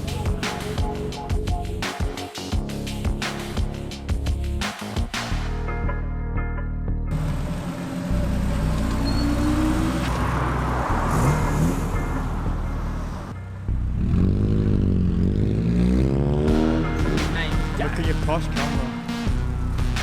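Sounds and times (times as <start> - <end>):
music: 0.0 - 14.4, 16.2 - 20.0
car engines revving: 7.1 - 20.0.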